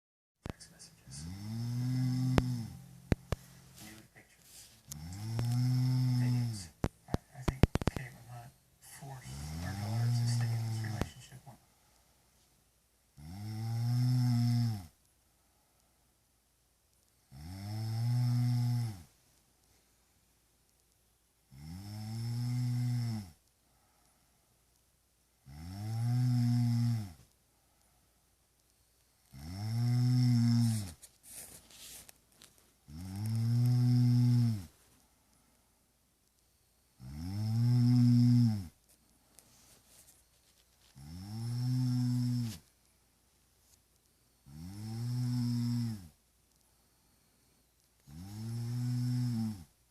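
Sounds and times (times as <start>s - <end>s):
quiet breathing: 0.4s - 16.4s, 21.5s - 49.9s
person snoring: 1.0s - 2.9s, 4.9s - 6.8s, 9.3s - 11.0s, 13.2s - 14.9s, 17.3s - 19.1s, 21.5s - 23.4s, 25.4s - 27.2s, 29.3s - 31.0s, 32.9s - 34.7s, 37.0s - 38.8s, 41.0s - 42.6s, 44.5s - 46.2s, 48.1s - 49.7s.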